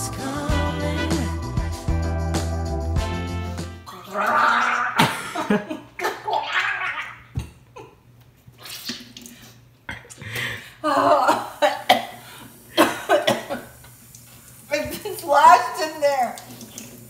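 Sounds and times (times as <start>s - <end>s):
person coughing: 12.8s - 13.6s.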